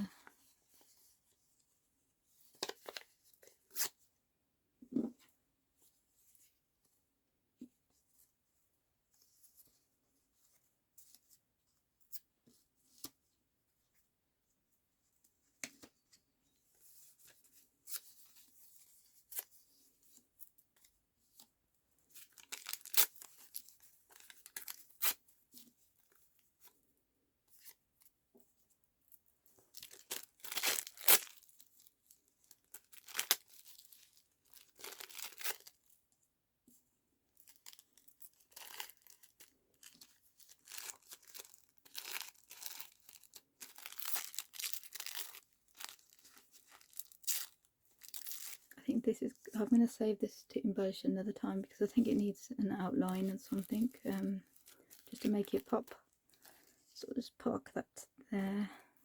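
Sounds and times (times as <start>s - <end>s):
paper rustling and crinkling: 37.4s - 48.7s.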